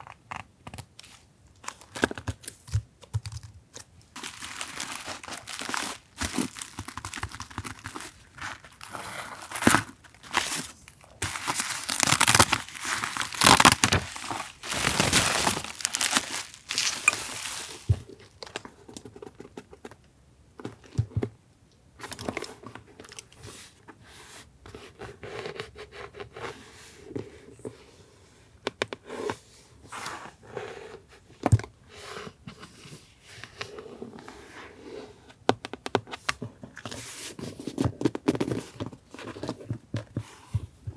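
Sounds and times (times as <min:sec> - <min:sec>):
packaging crinkling and tearing: 0:04.2 - 0:18.7
light rustles: 0:13.0 - 0:18.1.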